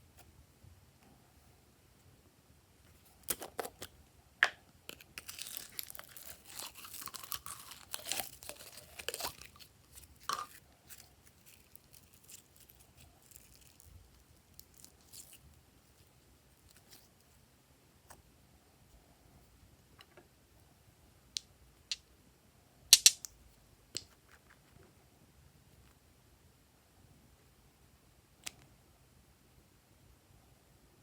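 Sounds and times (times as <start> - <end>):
slime crackling and popping: 4.9 - 15.4.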